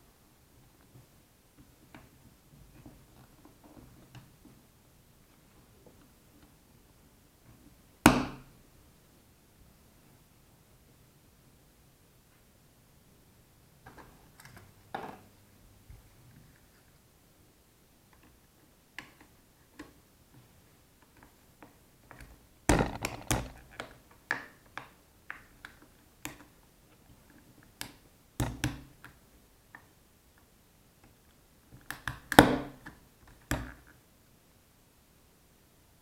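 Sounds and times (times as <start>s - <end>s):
sharp clicks and knocks: 21.0s - 26.5s.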